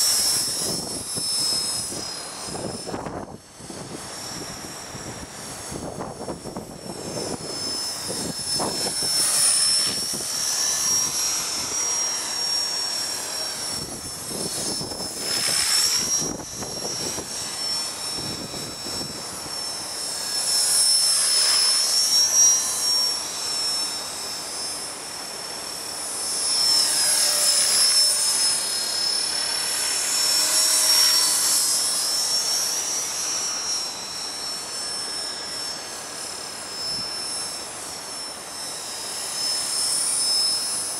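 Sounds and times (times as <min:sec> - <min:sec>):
rc helicopter motor whine: 0:00.0 - 0:40.9
wind rumble on microphone: 0:00.1 - 0:11.9, 0:13.6 - 0:19.6.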